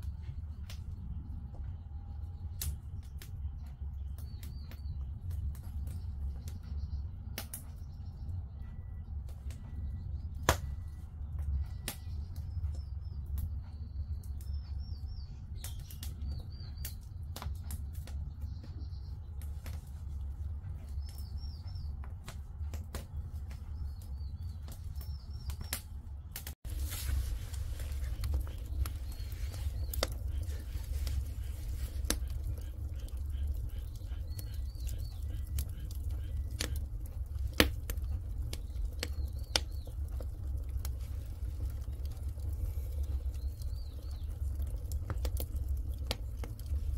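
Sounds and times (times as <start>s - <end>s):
fire low rumble: 0.0s - 46.9s
firewood crackling and popping: 0.0s - 46.9s
small birds chirping: 0.0s - 46.9s.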